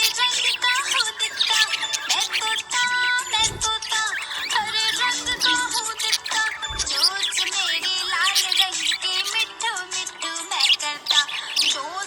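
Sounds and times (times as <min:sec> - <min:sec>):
budgerigars chattering and warbling: 0:00.0 - 0:12.0.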